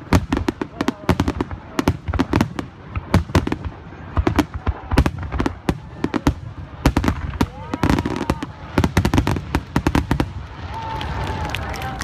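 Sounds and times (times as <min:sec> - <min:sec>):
fireworks bursting: 0:00.0 - 0:11.8.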